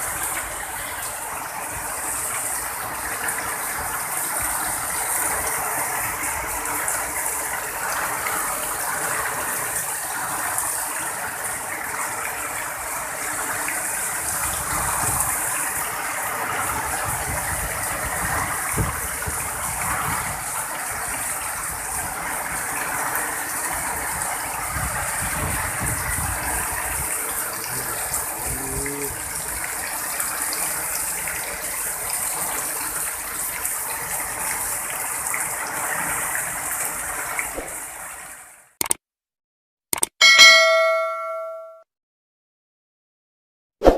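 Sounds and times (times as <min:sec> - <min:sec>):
heavy rain pouring: 0:00.0 - 0:38.6
wind buffeting microphone: 0:16.6 - 0:22.2, 0:24.0 - 0:27.4.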